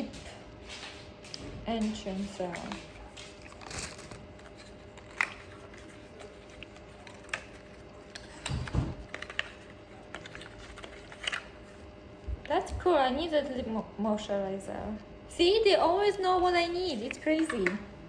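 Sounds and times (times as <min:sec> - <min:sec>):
packaging clicks and crinkling: 0:01.3 - 0:11.8.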